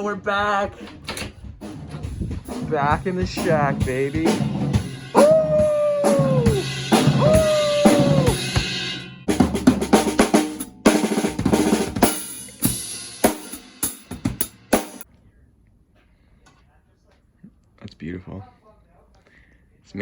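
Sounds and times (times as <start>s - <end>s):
drum kit playing busy beat: 0.0s - 15.1s.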